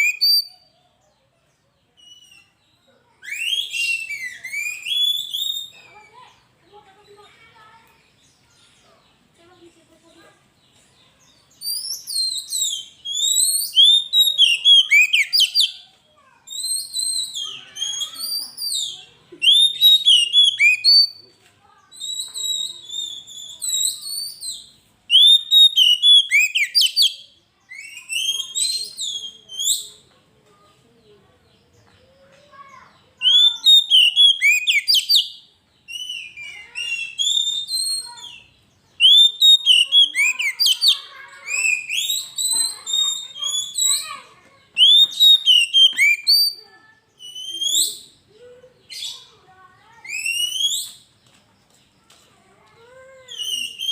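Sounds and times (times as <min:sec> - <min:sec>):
bird singing whistled phrases: 0:00.0 - 0:00.8, 0:02.0 - 0:06.3, 0:11.5 - 0:30.0, 0:32.9 - 0:48.2, 0:48.8 - 0:51.1, 0:53.3 - 0:53.9.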